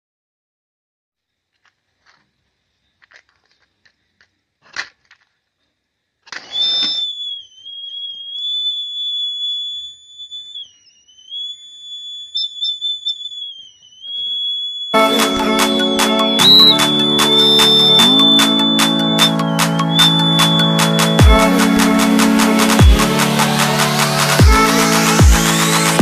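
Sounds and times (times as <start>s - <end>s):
high whistling tone: 6.4s - 26.0s
music: 15.0s - 26.0s.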